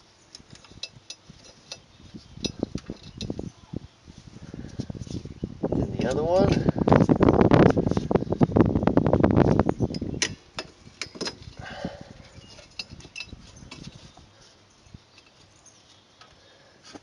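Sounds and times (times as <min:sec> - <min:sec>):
metal spring clicking and scraping: 0:00.3 - 0:03.5, 0:12.4 - 0:14.2.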